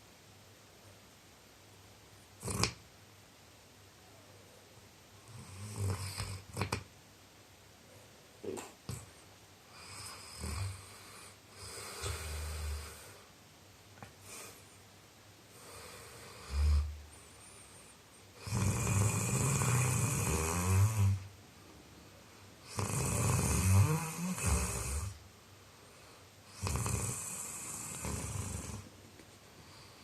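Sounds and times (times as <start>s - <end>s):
man snoring: 2.4s - 2.8s, 5.2s - 6.7s, 9.7s - 13.2s, 15.6s - 17.0s, 18.4s - 21.2s, 22.6s - 25.2s, 26.5s - 28.9s.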